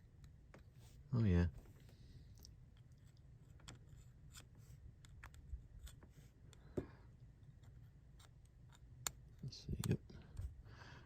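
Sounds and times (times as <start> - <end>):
light clicks and taps: 7.6 - 10.5.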